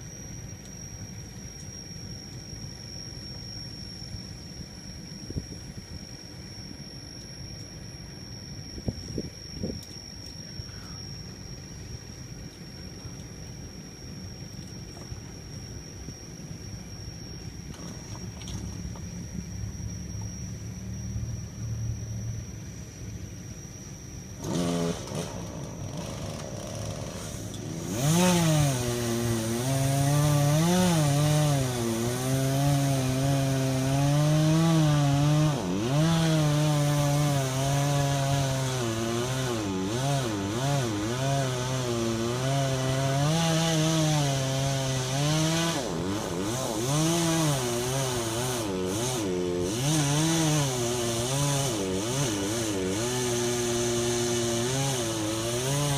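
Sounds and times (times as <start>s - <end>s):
chainsaw idling and revving: 24.4s - 55.9s.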